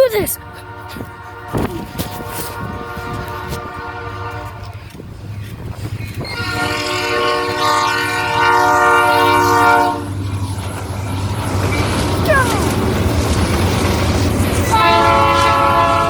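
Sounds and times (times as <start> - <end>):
train horn blasts: 0.4 - 4.9, 6.3 - 10.2, 14.7 - 16.0.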